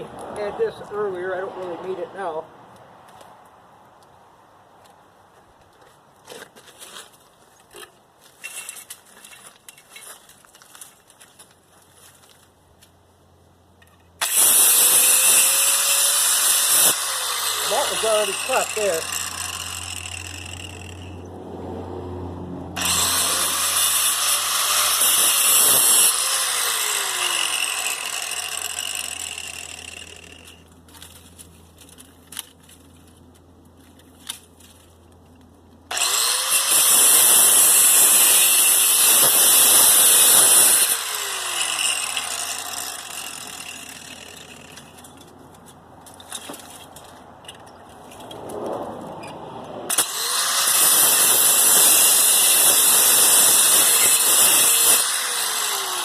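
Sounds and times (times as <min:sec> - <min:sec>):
grinder cutting metal: 0:14.2 - 0:21.3, 0:22.8 - 0:30.6, 0:35.9 - 0:45.0, 0:49.9 - 0:56.0.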